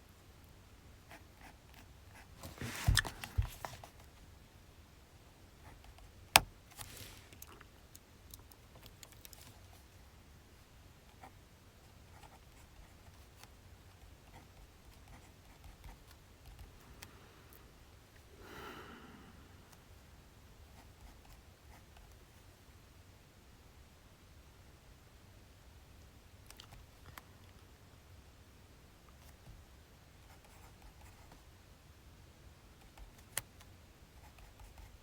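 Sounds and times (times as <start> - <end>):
faint pen scratching: 1.1 - 4.1
paper rustling: 2.4 - 3.9, 6.7 - 7.6.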